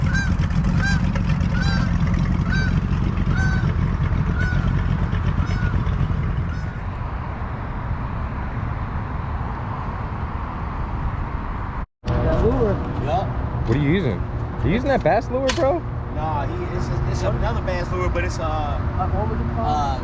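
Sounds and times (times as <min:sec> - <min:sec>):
goose honking: 0:00.0 - 0:05.9, 0:06.5 - 0:06.8.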